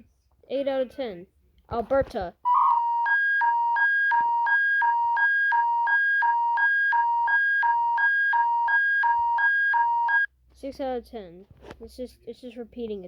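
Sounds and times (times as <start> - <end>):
two-tone electronic alert warble: 2.5 - 10.3.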